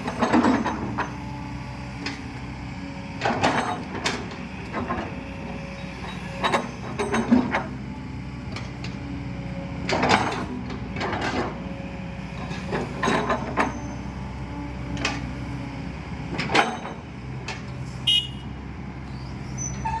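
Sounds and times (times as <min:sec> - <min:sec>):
excavator diesel engine running: 0:00.0 - 0:20.0.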